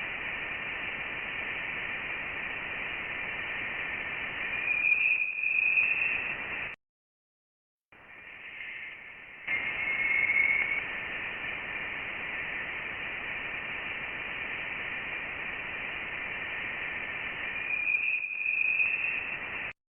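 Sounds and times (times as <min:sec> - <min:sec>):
steady high hiss: 0:00.0 - 0:06.8, 0:08.0 - 0:19.8
faint steady tones: 0:08.0 - 0:19.8.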